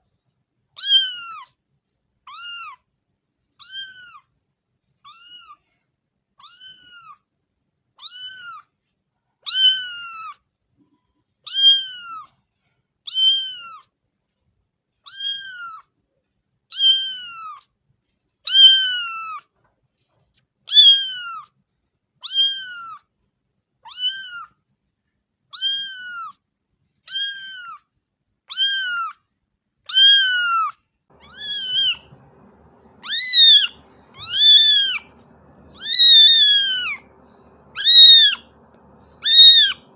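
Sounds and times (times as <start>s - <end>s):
faint background hum: 0.0s - 39.9s
cat meowing: 0.8s - 1.5s, 2.3s - 2.8s, 3.6s - 4.3s, 5.1s - 5.6s, 6.4s - 7.2s, 8.0s - 8.6s, 9.5s - 10.4s, 11.5s - 12.3s, 13.1s - 13.8s, 15.1s - 15.8s, 16.7s - 17.6s, 18.5s - 19.4s, 20.7s - 21.5s, 22.2s - 23.0s, 23.8s - 24.5s, 25.5s - 26.4s, 27.1s - 27.8s, 28.5s - 29.2s, 29.9s - 39.9s.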